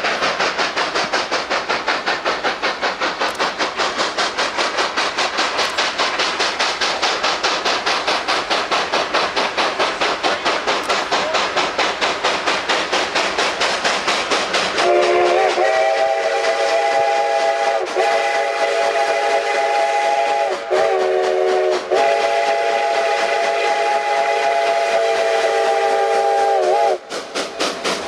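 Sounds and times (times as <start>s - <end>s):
steam engine chuffing: 0.0s - 28.0s
multi-note train whistle: 14.8s - 27.1s.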